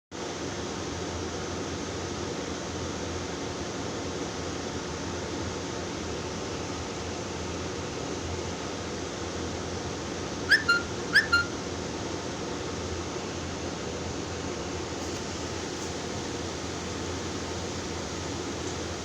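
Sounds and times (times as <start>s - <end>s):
steady fan-like hiss: 0.2s - 19.0s
whistle-like chirps: 10.5s - 11.6s.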